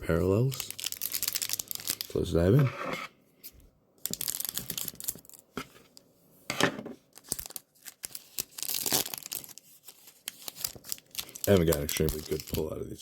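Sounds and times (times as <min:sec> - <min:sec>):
wrapper tearing and crinkling: 0:00.2 - 0:02.2, 0:04.0 - 0:05.4, 0:07.1 - 0:12.8.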